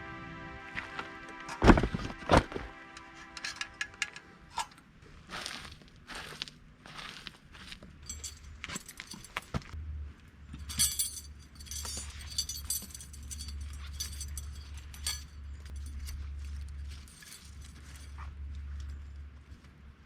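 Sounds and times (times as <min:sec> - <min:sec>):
steady low rumble: 0:00.0 - 0:06.7
metallic clinking and jangling: 0:08.0 - 0:09.8, 0:10.5 - 0:18.3.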